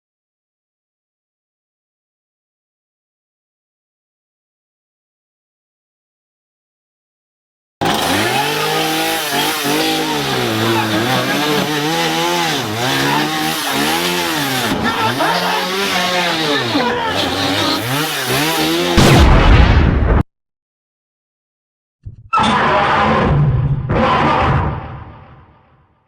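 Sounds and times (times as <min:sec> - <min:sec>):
engine revving up and down: 0:07.8 - 0:19.3
loud bang: 0:19.0 - 0:20.2.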